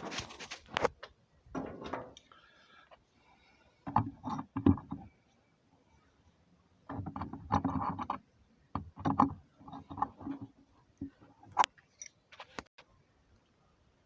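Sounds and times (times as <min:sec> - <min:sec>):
hollow object knocking and scraping: 0:01.5 - 0:02.2, 0:03.8 - 0:05.2, 0:06.9 - 0:11.7.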